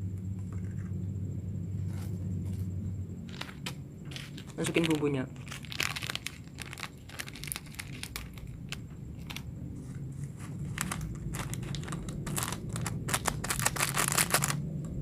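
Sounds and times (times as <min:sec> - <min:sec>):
plastic sachets crinkling and tearing: 0:03.3 - 0:09.5, 0:10.3 - 0:14.6.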